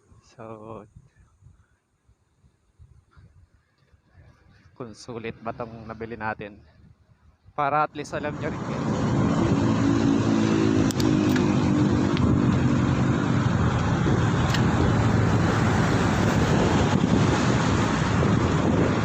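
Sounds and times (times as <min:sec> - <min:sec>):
wind noise on microphone: 0:00.0 - 0:19.0
vehicle engine hum: 0:08.1 - 0:19.0.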